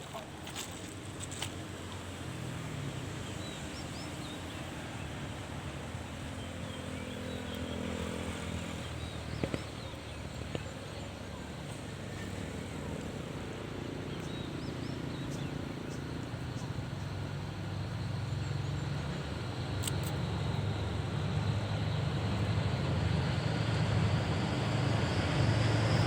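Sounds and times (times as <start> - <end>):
diesel train engine humming: 0.0 - 26.0
small birds chirping: 0.1 - 20.8.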